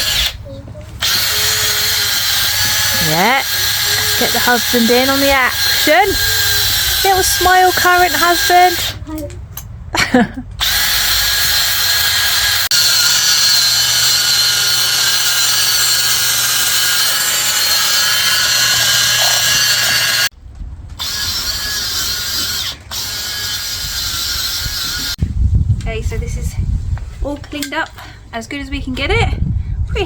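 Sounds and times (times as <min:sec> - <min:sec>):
small power drill whining: 0:00.0 - 0:00.4, 0:01.0 - 0:09.0, 0:10.6 - 0:20.3, 0:21.0 - 0:25.2.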